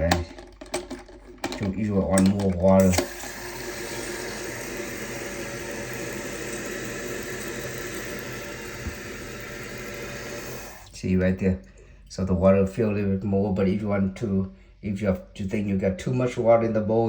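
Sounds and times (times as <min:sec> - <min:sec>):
toilet tank refilling hiss: 0:02.8 - 0:11.0.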